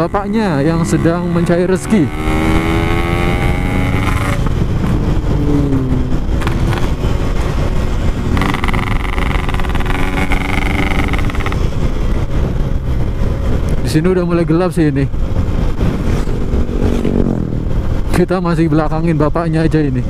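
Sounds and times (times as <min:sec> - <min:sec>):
two-stroke motorcycle engine: 0:00.0 - 0:05.4, 0:06.1 - 0:12.3.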